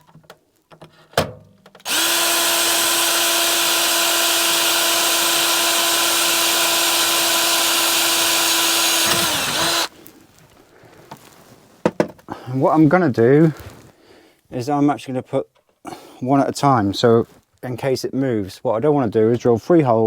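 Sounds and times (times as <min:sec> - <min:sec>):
power drill motor whine: 0:01.8 - 0:09.9.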